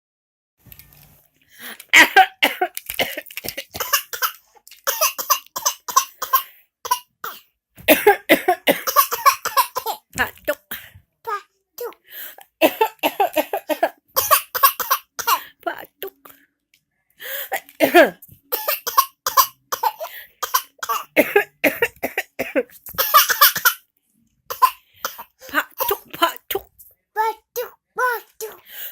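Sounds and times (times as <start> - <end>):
person coughing: 2.0 - 4.3, 4.9 - 10.9, 12.6 - 15.8, 17.4 - 23.8, 24.5 - 26.4.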